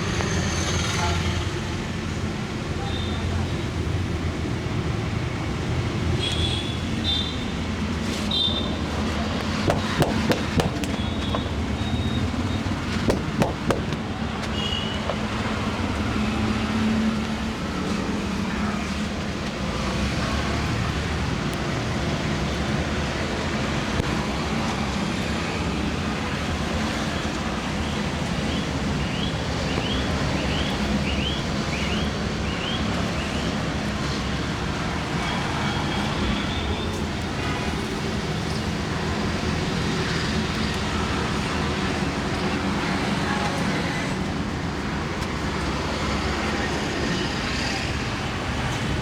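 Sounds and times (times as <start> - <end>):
street traffic noise: 0.0 - 49.0
hands slapping in massage: 9.4 - 11.6, 13.1 - 14.2.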